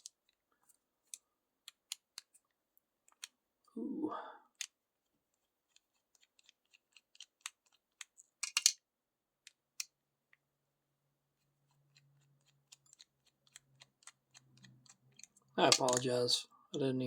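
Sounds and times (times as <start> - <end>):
lockpicking tools clicking in lock: 6.2 - 8.8.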